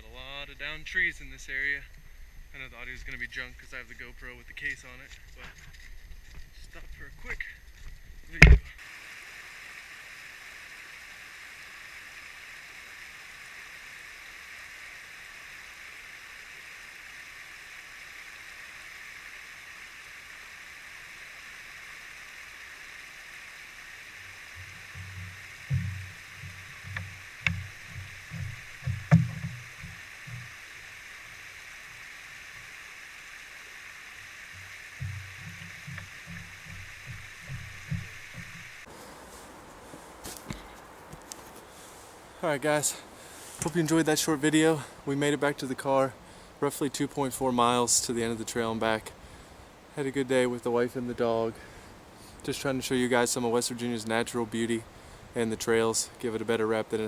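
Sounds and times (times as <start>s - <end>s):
muffled running water: 0.0s - 57.0s
sharp clicks: 4.6s - 8.8s, 24.1s - 30.9s
muffled thumps: 24.6s - 30.5s, 34.6s - 39.0s.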